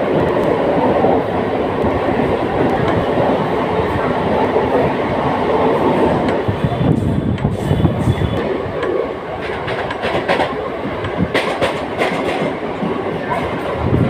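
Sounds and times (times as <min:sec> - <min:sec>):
train wheels on track: 0:00.0 - 0:14.0.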